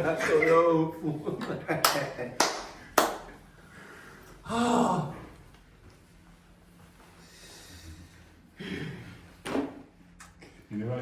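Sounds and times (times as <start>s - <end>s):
man groaning: 4.4s - 5.3s.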